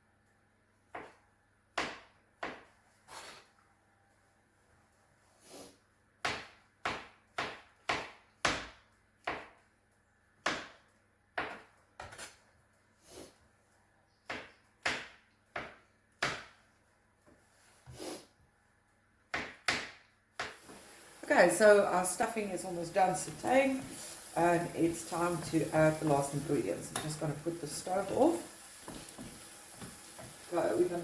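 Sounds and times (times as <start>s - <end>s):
kitchen utensils knocking: 25.1s - 28.4s.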